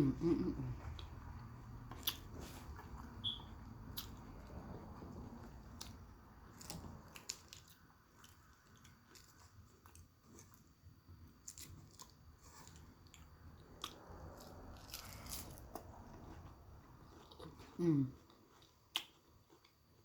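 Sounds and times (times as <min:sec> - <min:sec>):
person chewing food: 0:00.3 - 0:20.0
small food crunches: 0:06.5 - 0:10.7, 0:11.4 - 0:17.6.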